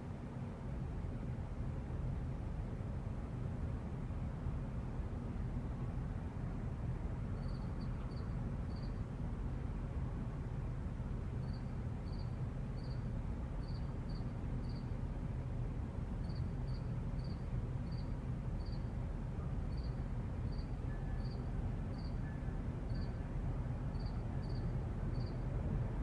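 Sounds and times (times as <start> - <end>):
cricket chirping: 7.4 - 9.0, 11.4 - 14.9, 16.2 - 18.9, 19.7 - 22.2, 22.9 - 23.2, 23.9 - 25.4.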